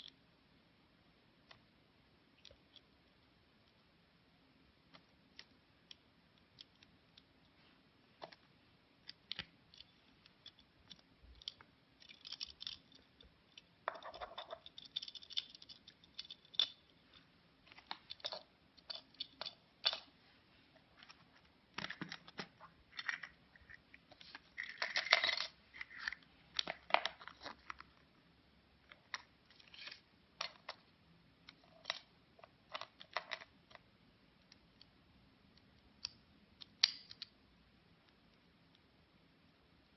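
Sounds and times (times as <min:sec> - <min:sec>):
plastic eggs clicking and snapping: 0:36.0 - 0:37.3.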